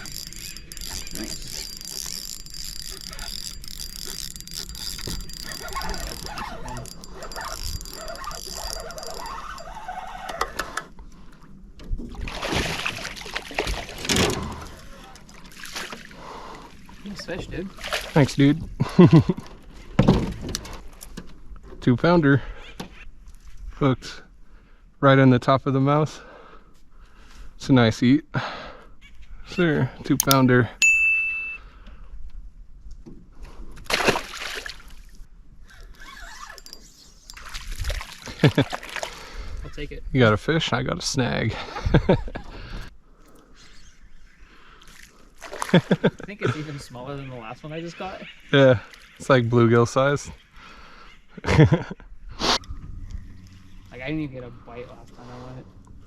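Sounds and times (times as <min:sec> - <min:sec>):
water sloshing: 0:00.0 - 0:10.3, 0:12.0 - 0:18.2, 0:36.4 - 0:39.3
water splash: 0:12.2 - 0:14.1, 0:33.9 - 0:35.0.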